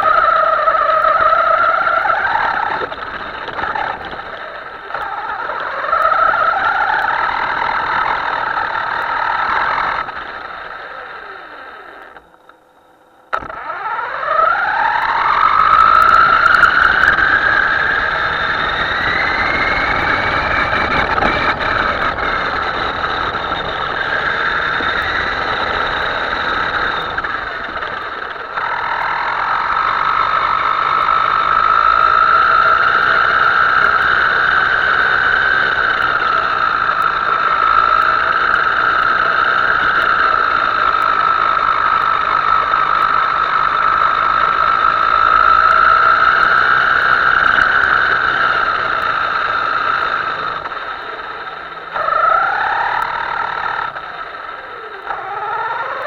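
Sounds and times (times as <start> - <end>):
toy boat motor whining: 0.0 - 56.0.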